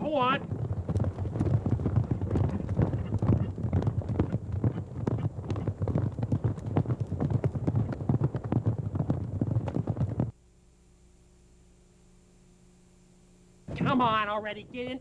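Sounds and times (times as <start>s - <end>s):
horses' hoofbeats clattering: 0.0s - 10.4s.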